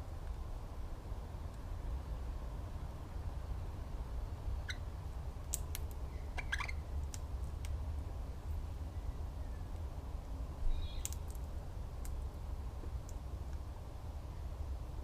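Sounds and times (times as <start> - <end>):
birds chipping: 6.0 - 6.9, 10.6 - 11.3.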